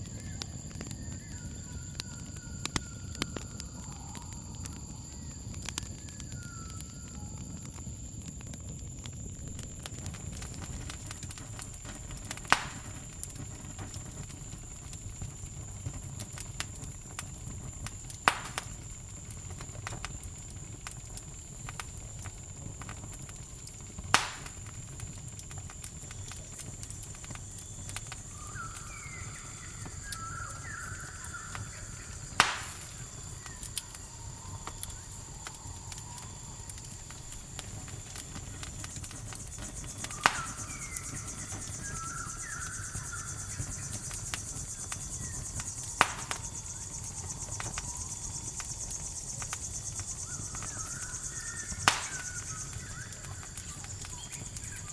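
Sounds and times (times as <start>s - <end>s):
campfire crackling: 0.0s - 54.9s
cricket trilling: 0.0s - 54.9s
loud pops from burning wood: 0.0s - 54.9s
short chirping calls: 28.0s - 35.5s, 39.6s - 48.3s, 49.0s - 54.9s.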